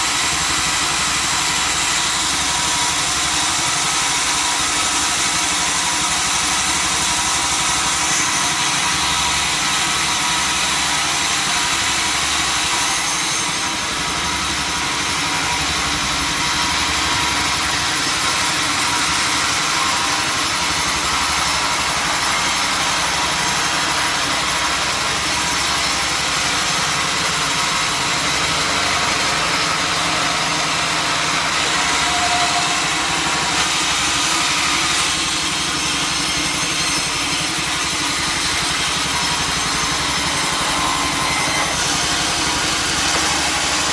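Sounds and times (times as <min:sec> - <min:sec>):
sawmill machinery drone: 0:00.0 - 0:43.9.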